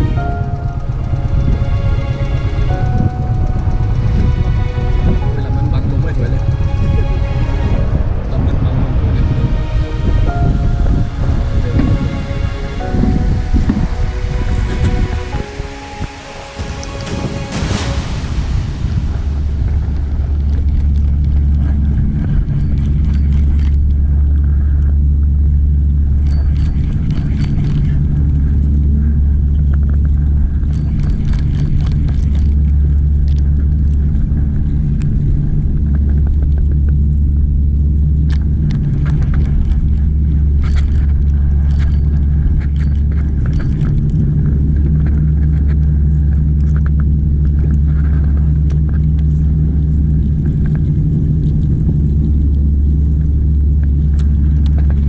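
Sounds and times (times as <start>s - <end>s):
boat engine droning: 0.0s - 55.0s.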